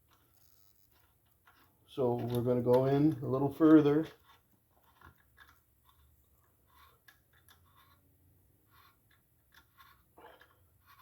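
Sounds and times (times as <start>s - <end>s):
hand tap clicking and creaking: 2.2s - 3.9s.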